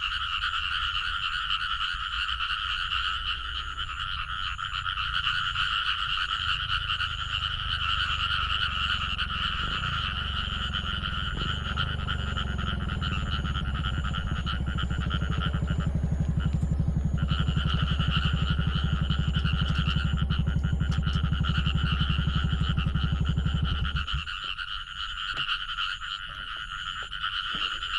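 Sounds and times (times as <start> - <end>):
frogs trilling: 0.0 - 27.9
low even pulsing: 5.0 - 24.4.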